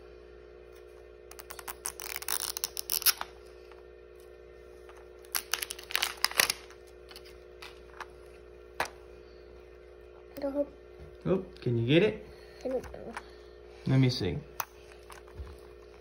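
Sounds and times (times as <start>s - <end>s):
packaging crinkling and tearing: 1.3s - 3.3s, 5.2s - 7.9s.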